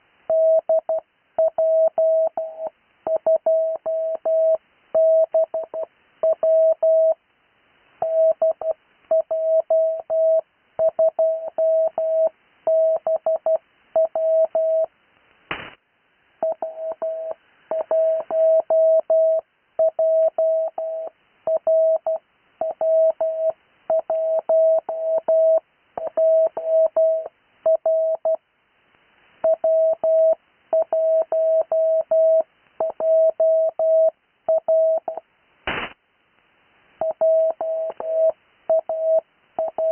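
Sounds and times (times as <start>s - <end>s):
burst of noise: 15.5s - 15.8s, 35.7s - 36.0s
radio hiss: 15.5s - 15.8s, 35.7s - 36.0s
morse code tone: 16.4s - 28.4s, 37.0s - 39.9s.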